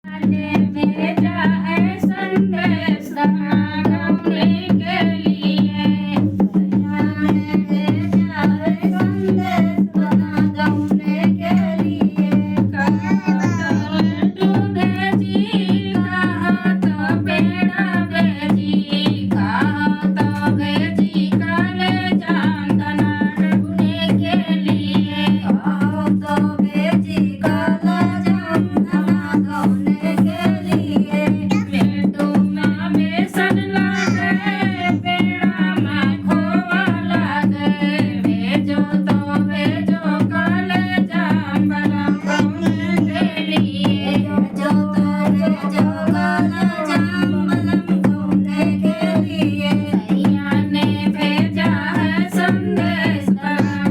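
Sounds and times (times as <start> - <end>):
hand drum: 0.0 - 53.9
person singing: 11.4 - 14.6, 31.4 - 32.4, 33.8 - 35.0, 41.7 - 53.9.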